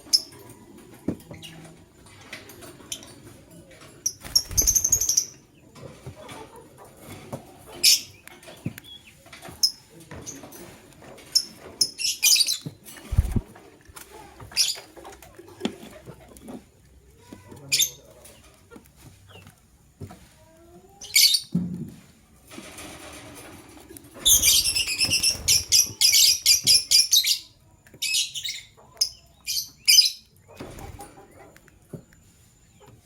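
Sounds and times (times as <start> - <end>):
lovebirds chirping: 4.0 - 5.7, 24.2 - 30.6
wing flapping: 4.2 - 5.3, 12.8 - 13.8, 22.5 - 26.5.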